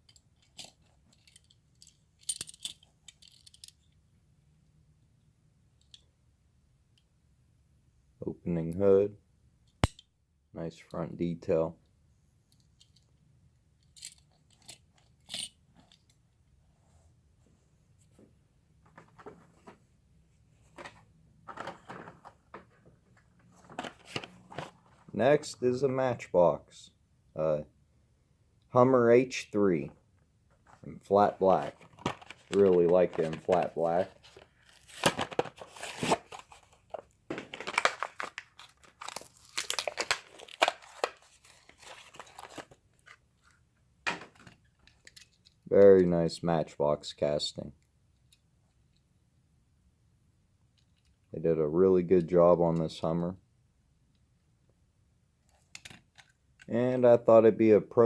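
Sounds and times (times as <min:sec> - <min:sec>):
plastic packaging clicks and crinkles: 0:31.5 - 0:43.2.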